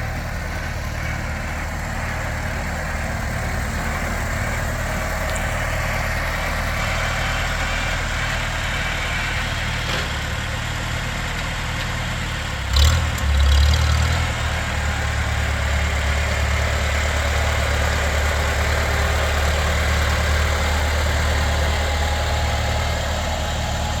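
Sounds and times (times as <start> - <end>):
tractor engine idling: 0.0 - 24.0
clunk: 9.8 - 10.2.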